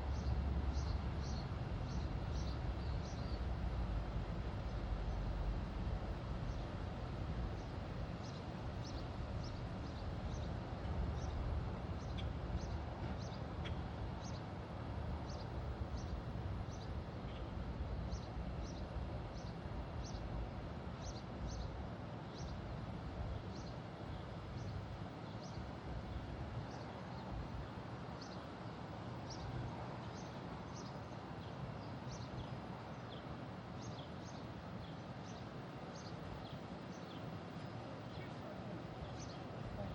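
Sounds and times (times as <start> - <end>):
low outdoor rumble: 0.0 - 21.9.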